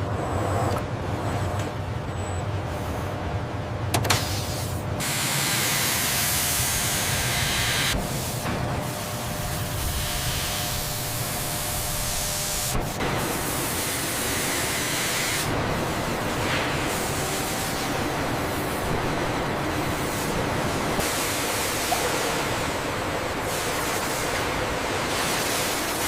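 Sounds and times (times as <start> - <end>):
factory machinery hissing: 4.0 - 26.0.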